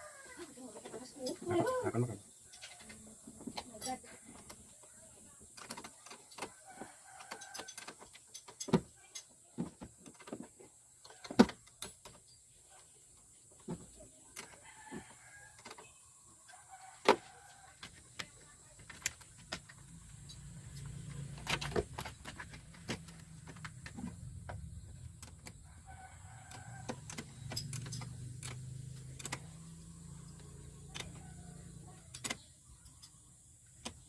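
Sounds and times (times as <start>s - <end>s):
sharp clicks and knocks: 26.4s - 34.0s.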